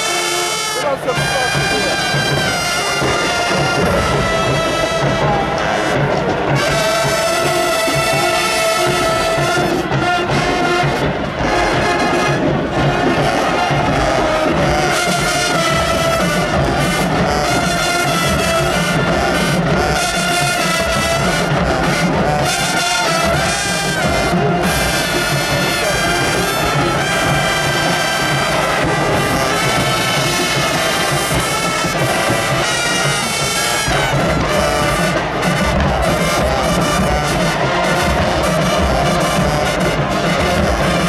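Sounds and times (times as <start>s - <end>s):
brass section playing chords: 0.0s - 41.0s
drums: 0.0s - 41.0s.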